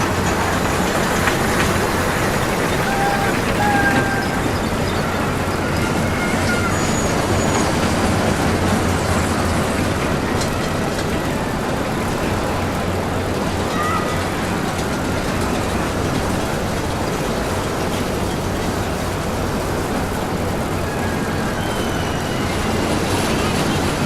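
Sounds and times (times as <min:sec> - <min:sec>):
roller coaster rumbling on track: 0:00.0 - 0:24.0.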